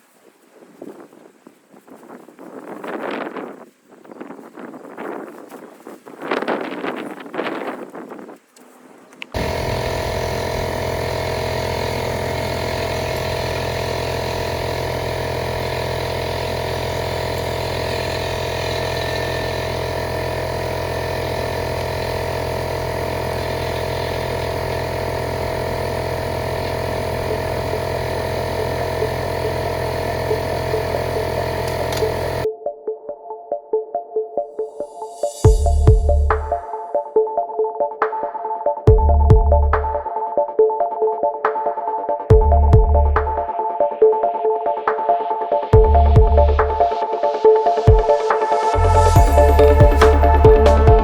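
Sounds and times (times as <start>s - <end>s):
motor-driven machine running: 9.4s - 32.5s, 35.4s - 36.7s, 42.3s - 43.5s, 45.8s - 51.0s.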